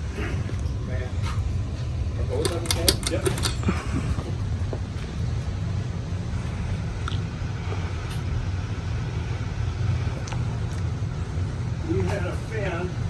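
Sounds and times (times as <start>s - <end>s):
ceiling fan running: 2.4s - 4.1s.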